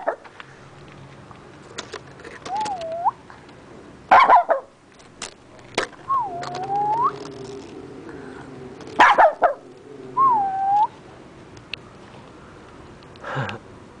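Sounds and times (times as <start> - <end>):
whistle-like tone: 2.5 - 3.2, 6.1 - 7.2, 10.2 - 11.0.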